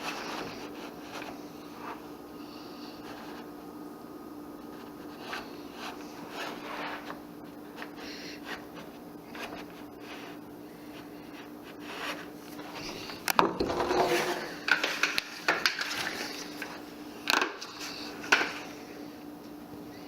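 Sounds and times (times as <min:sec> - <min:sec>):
steady low hum: 0:00.0 - 0:20.0
hard objects scraping: 0:11.7 - 0:16.8.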